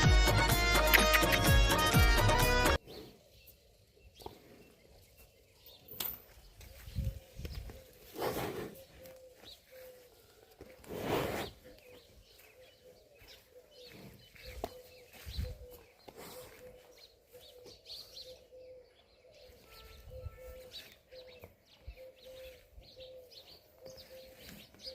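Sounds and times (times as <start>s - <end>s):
birds chirping: 0.4s - 24.9s
dove cooing: 6.7s - 8.1s, 8.7s - 10.3s, 11.7s - 24.9s.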